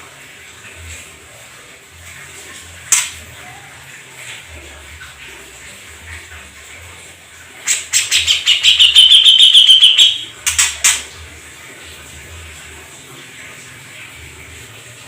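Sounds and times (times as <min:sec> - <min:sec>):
songbird trilling: 0:08.0 - 0:10.3
sharp bird notes: 0:08.0 - 0:10.4.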